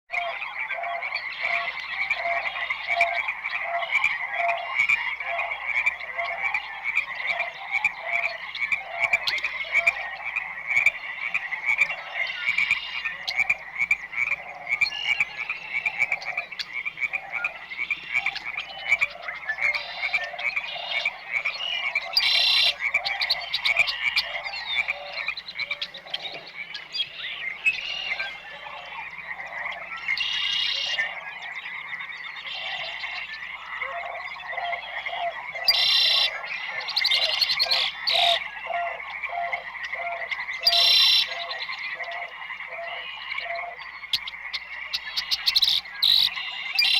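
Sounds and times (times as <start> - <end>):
frogs croaking: 0.1 - 46.9.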